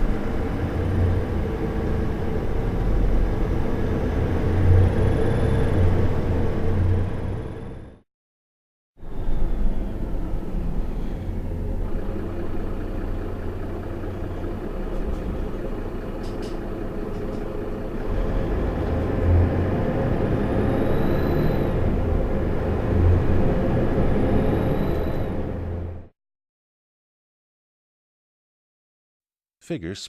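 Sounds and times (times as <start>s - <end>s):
bus engine drone: 0.0s - 8.0s, 9.0s - 26.1s.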